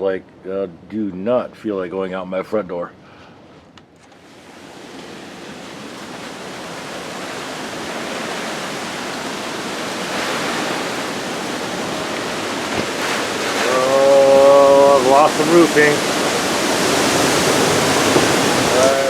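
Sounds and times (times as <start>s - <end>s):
hurricane wind: 4.2s - 19.0s
rain: 4.4s - 19.0s.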